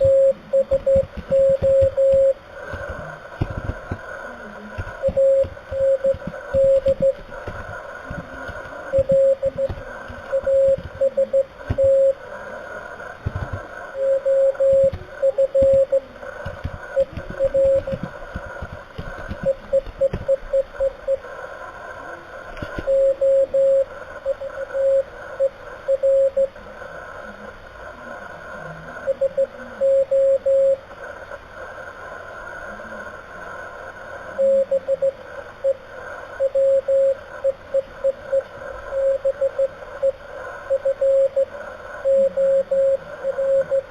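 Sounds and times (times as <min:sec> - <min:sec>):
morse code beeps: 0:00.0 - 0:04.0, 0:04.8 - 0:12.2, 0:13.2 - 0:21.2, 0:22.6 - 0:26.5, 0:29.1 - 0:30.8, 0:34.4 - 0:35.8, 0:36.4 - 0:43.9
radio band noise hiss: 0:00.0 - 0:43.9.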